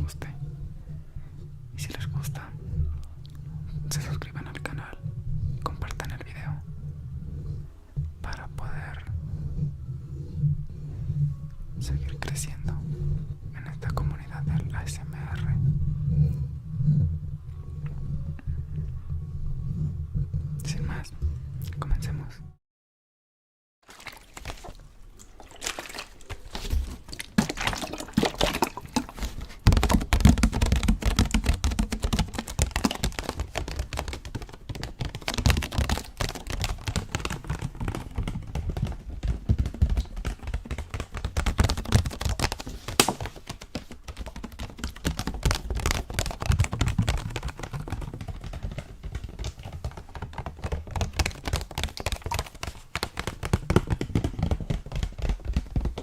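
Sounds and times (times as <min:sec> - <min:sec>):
water being poured: 0:23.8 - 0:29.2.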